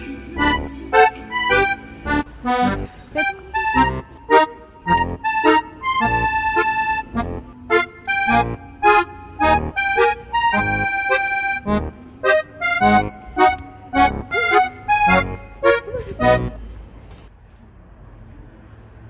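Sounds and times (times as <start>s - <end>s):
bass beat: 0.0s - 2.9s, 4.9s - 12.0s, 12.7s - 15.7s
instrumental background music: 0.0s - 15.9s.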